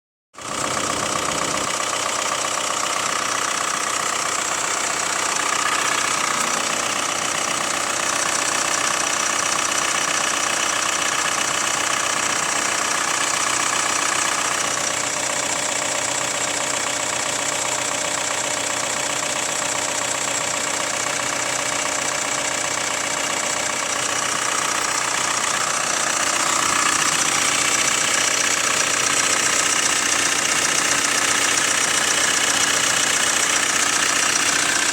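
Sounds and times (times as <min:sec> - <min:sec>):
diesel engine idling: 0:00.4 - 0:34.9
light clacking engine knock: 0:00.4 - 0:34.9.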